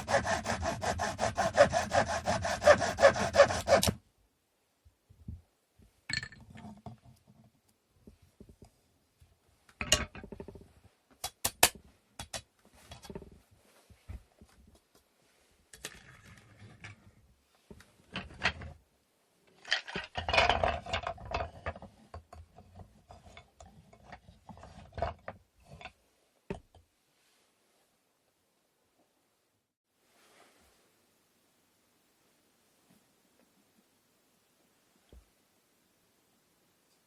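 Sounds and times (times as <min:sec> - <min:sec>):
wooden pieces clicking and knocking: 0:19.6 - 0:21.8
rustling: 0:30.0 - 0:31.0.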